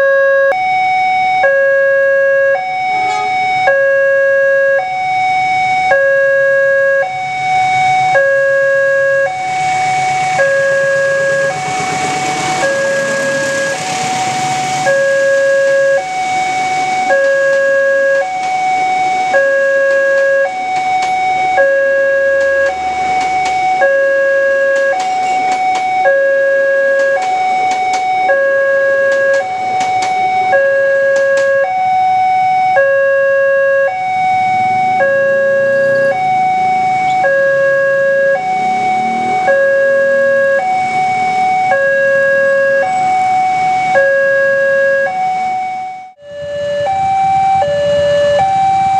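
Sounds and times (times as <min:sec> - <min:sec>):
two-tone crossing alarm: 0:00.0 - 0:48.9
sharp clacks: 0:19.8 - 0:21.3, 0:24.7 - 0:26.0, 0:27.0 - 0:28.2, 0:29.1 - 0:30.2.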